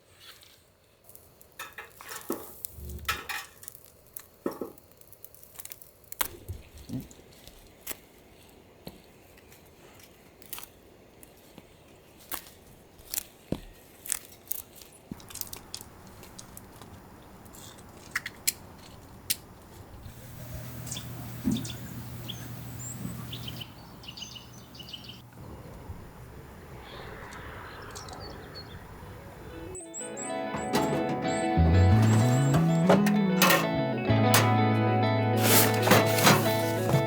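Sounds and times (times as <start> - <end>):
crunchy chewing: 2.4 - 19.9
faint bird chirps: 20.8 - 25.2
cutlery and dishes clicking: 30.5 - 34.7, 35.4 - 37.0.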